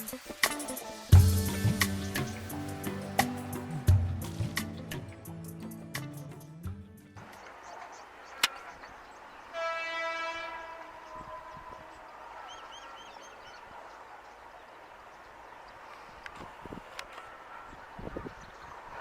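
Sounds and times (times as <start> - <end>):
train horn: 9.5 - 12.2.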